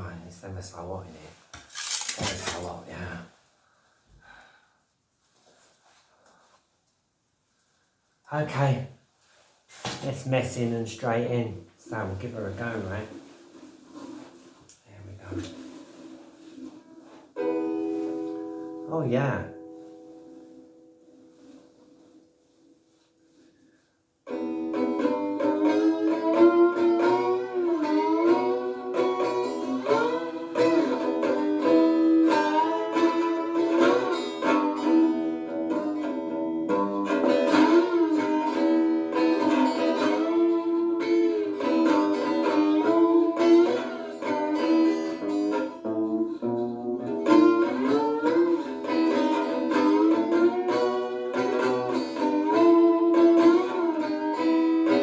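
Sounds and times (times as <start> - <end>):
slide guitar blues line: 15.3 - 22.6, 24.3 - 55.0.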